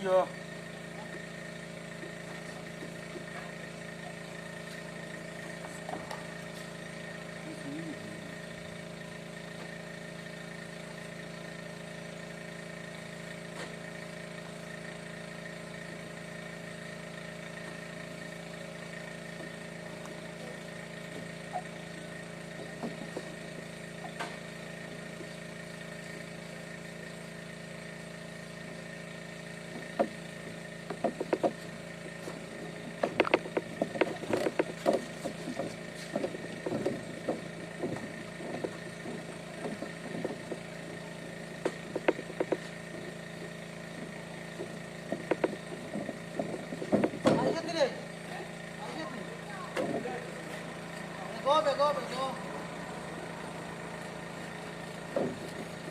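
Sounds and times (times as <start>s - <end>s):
vehicle engine humming: 0.0s - 55.9s
sharp knocks and rattles: 29.6s - 47.8s, 54.9s - 55.9s.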